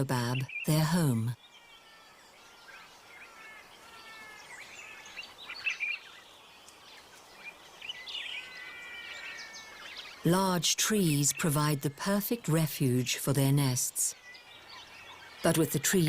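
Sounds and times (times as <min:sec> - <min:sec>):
birds whistling and chirping: 0:00.0 - 0:12.2, 0:14.1 - 0:16.0.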